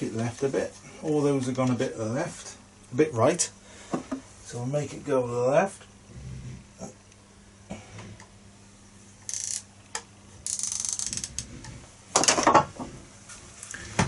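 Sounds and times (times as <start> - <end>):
ratcheting clicks of sight adjuster: 9.2 - 11.5.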